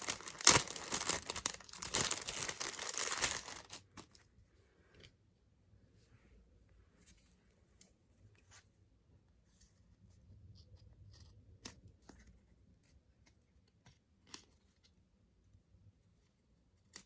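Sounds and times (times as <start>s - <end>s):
sharp packaging snaps: 0.0s - 3.8s
packaging rustling and clicks: 0.0s - 4.2s.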